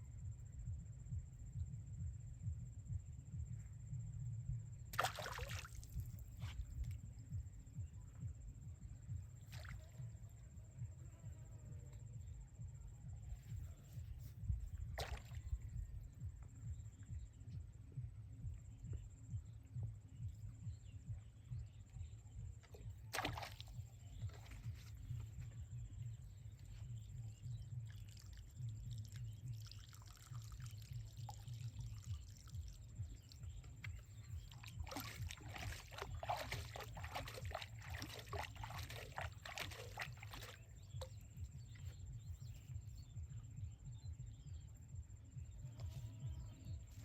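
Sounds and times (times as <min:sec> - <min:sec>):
water splashing and sloshing: 0:04.9 - 0:07.0, 0:14.8 - 0:15.7, 0:22.6 - 0:25.6, 0:27.9 - 0:41.9.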